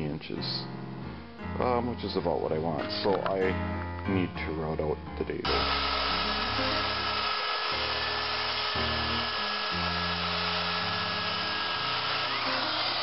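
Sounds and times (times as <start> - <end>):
background music: 0.0 - 13.0
router whining and cutting wood: 5.4 - 13.0.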